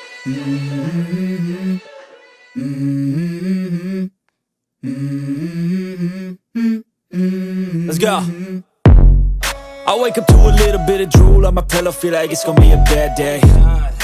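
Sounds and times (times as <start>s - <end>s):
hummed vocal music: 0.0s - 8.8s, 9.6s - 14.0s
person speaking: 7.8s - 8.5s.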